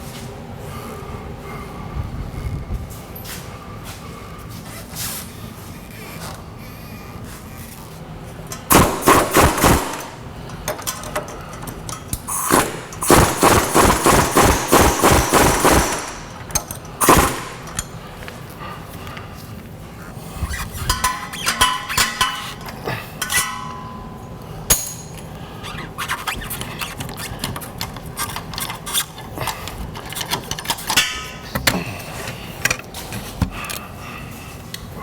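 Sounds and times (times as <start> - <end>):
metal tools clanking: 8.4 - 18.4, 20.3 - 33.8.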